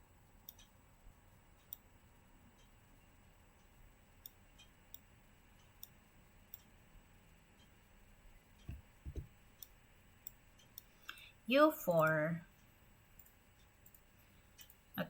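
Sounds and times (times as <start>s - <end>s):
low thumps: 8.7s - 9.4s.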